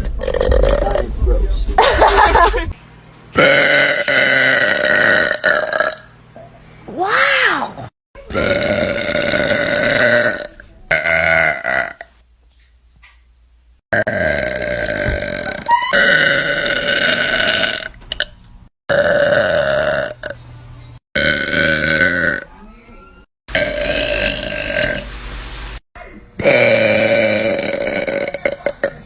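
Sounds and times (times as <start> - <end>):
girls burping: 26.4 - 28.7.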